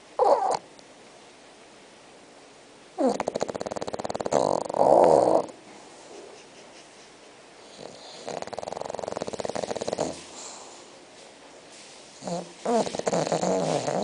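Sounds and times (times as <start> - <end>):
puppy snoring: 0.2 - 0.6, 3.0 - 6.4, 7.6 - 10.9, 12.2 - 14.0
soft breathing: 5.7 - 13.0.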